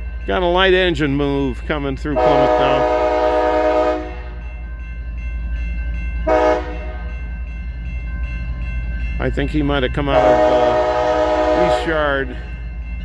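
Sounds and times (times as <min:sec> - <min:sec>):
low rumble of passing locomotives: 0:00.0 - 0:13.0
locomotive horn blasts: 0:02.2 - 0:04.4, 0:06.3 - 0:07.0, 0:10.1 - 0:12.0.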